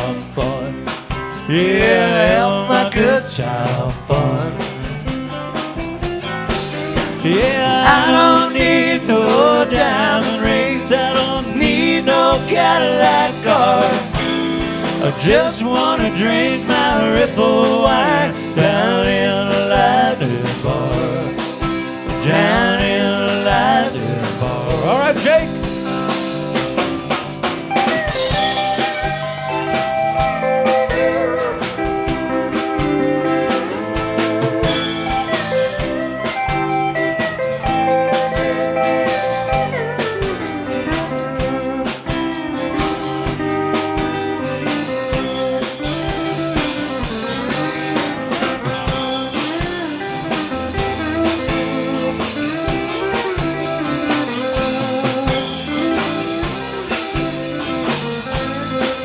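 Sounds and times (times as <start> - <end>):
drum kit steady beat: 0.0 - 59.0
electric bass: 0.0 - 59.0
pedal steel guitar solo: 24.0 - 59.0.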